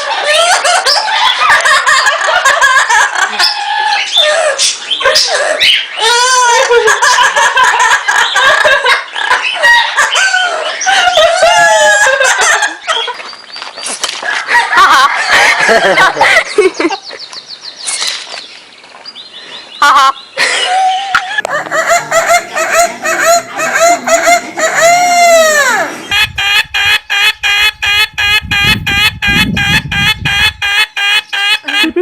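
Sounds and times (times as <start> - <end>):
parrots calling: 0.0 - 6.4, 19.7 - 32.0.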